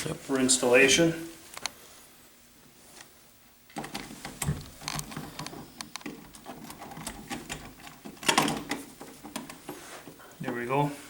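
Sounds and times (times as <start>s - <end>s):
lock parts clicking and rattling: 3.7s - 9.8s.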